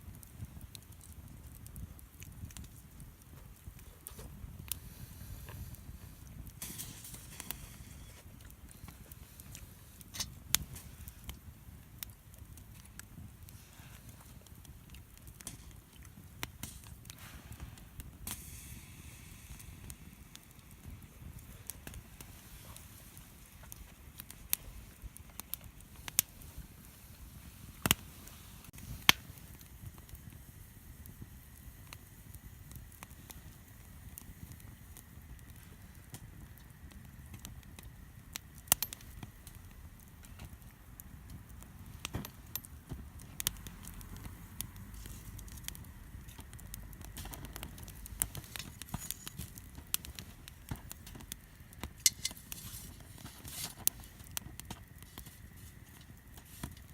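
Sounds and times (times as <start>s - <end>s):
campfire crackling and popping: 0.0s - 56.9s.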